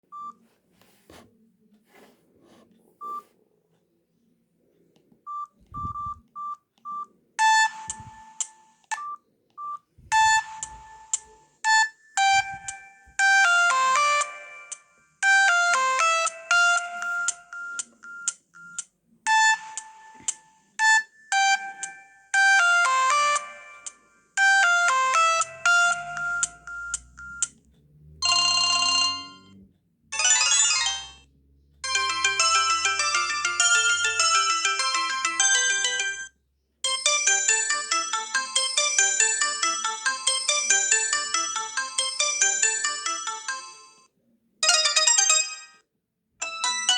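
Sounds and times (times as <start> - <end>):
phone ringtone melody: 7.4 - 9.2, 10.0 - 27.6, 28.2 - 29.5, 30.1 - 44.0, 46.4 - 46.9.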